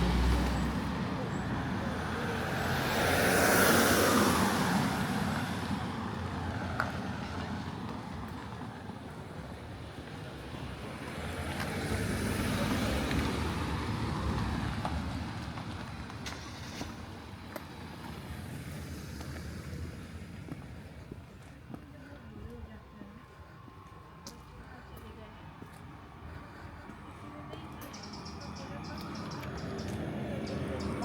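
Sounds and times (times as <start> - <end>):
car passing by: 0.0 - 21.0
second vehicle passing: 0.0 - 21.0.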